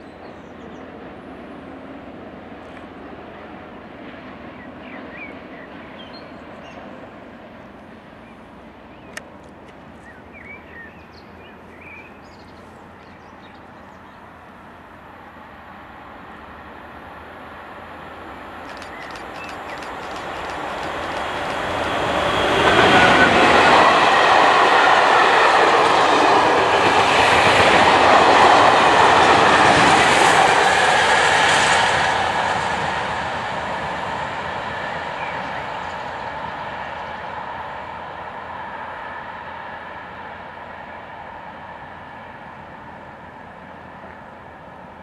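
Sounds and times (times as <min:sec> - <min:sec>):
train wheels on rails: 0:11.6 - 0:45.0.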